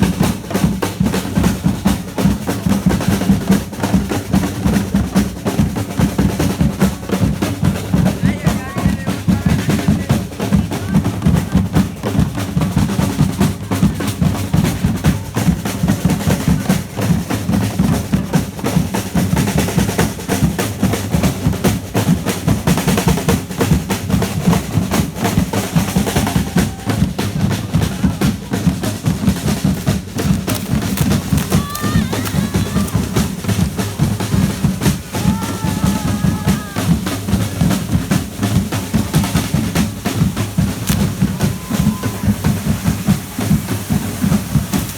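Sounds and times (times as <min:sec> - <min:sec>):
drum band playing fast beat: 0:00.0 - 0:44.9
crowd voices: 0:07.0 - 0:18.6, 0:24.3 - 0:44.9.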